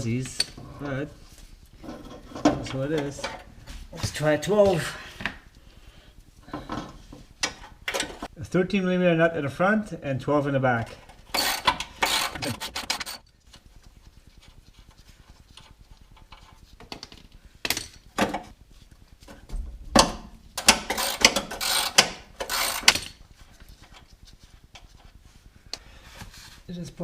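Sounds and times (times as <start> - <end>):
ratchet wrench clicking: 11.4 - 13.2, 20.6 - 23.2.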